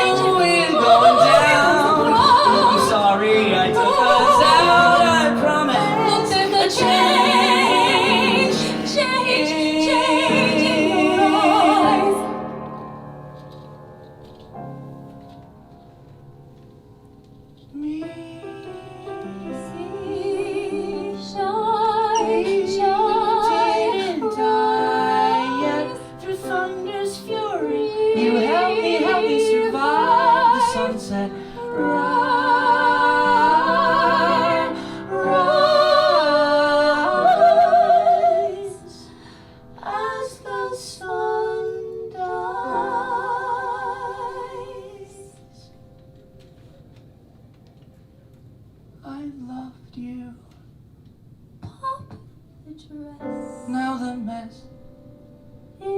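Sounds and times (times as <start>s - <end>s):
woman singing with vibrato: 0.0s - 12.3s, 17.8s - 39.1s.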